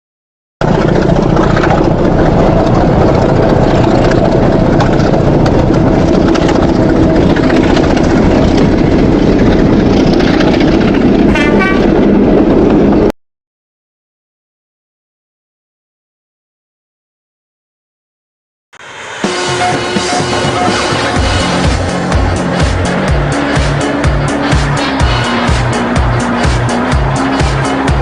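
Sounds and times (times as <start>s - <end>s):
train rumbling: 0.6s - 13.1s, 18.8s - 28.0s
high-pitched tone: 11.3s - 12.0s, 18.8s - 24.0s.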